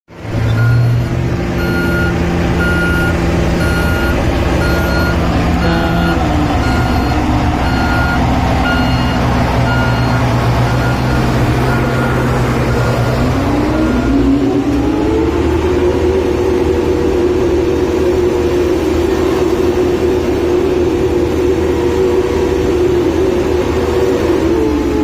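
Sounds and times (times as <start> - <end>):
construction machine engine running: 0.1 - 25.0
reversing alarm beeping: 0.4 - 13.0, 13.8 - 14.2.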